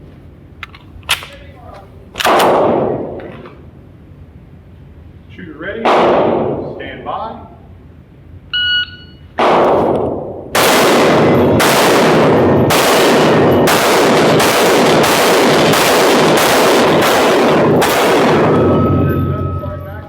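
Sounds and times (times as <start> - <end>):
pistol shots echoing: 2.2 - 3.2, 5.8 - 6.8, 9.4 - 19.5.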